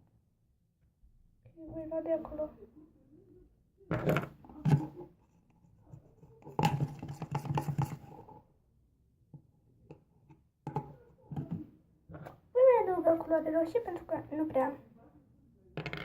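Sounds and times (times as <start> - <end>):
utensil tapping and scraping: 5.6 - 8.4
hands handling plastic containers: 5.9 - 8.3.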